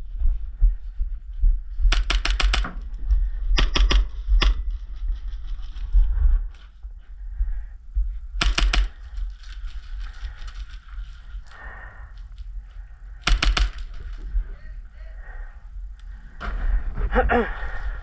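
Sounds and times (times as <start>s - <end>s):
airsoft gunfire bursts: 8.4s - 9.0s, 13.3s - 13.9s.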